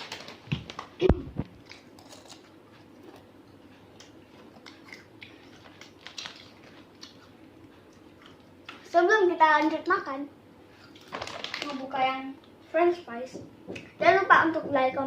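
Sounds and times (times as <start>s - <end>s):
person chewing crunchy snacks: 0.0s - 3.3s, 4.0s - 8.8s.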